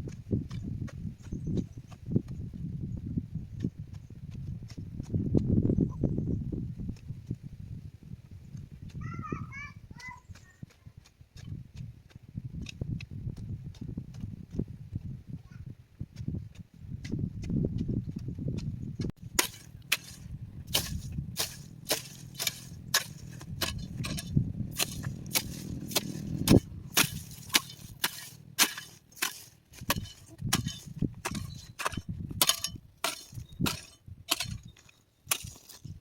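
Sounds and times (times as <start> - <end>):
sharp chopping knocks: 19.4 - 34.5
low rumble: 20.2 - 28.6.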